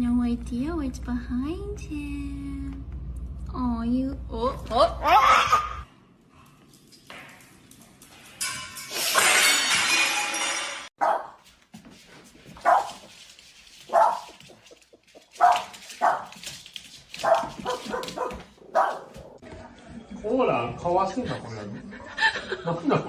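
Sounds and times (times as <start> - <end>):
dog barking: 11.0 - 11.4, 12.6 - 13.0, 13.9 - 14.5, 15.4 - 16.4, 17.2 - 19.4.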